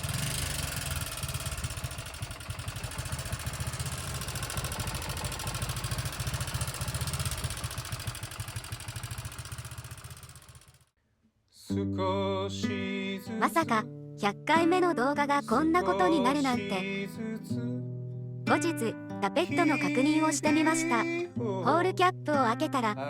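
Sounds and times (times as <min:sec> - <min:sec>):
engine running with mechanical clatter: 0:00.0 - 0:10.9.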